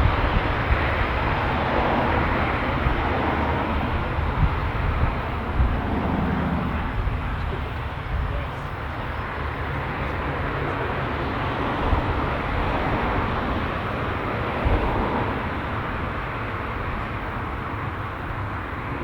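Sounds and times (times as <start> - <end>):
low rumble: 0.0 - 8.9
turboprop engines droning: 0.0 - 19.0.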